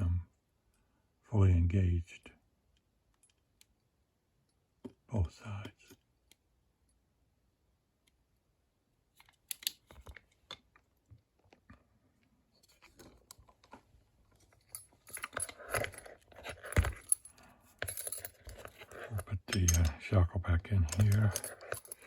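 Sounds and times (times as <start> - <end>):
padlock clicking and scraping: 9.2 - 10.8, 14.4 - 20.0, 20.9 - 22.0.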